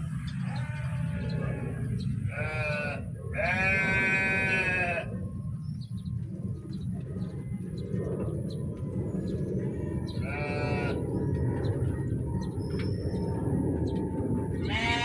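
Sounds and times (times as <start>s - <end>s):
low rumble: 0.0s - 15.0s
sheep bleating: 0.4s - 5.1s, 10.2s - 11.0s, 14.6s - 15.0s.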